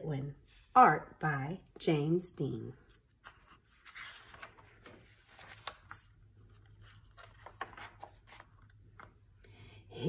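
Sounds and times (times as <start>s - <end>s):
book pages turning: 2.8s - 9.4s.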